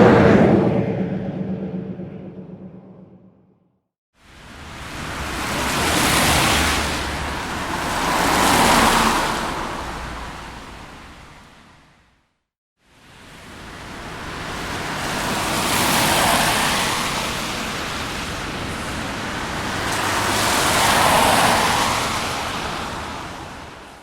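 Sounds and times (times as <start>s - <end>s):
cars passing with tyre noise: 4.6s - 11.5s, 14.8s - 24.0s.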